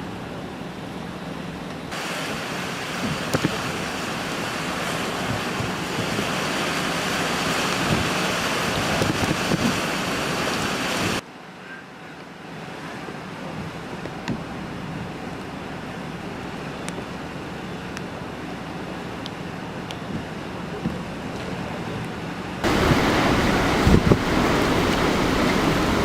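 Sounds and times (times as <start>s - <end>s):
strong wind rushing: 5.1s - 11.2s, 22.6s - 26.0s.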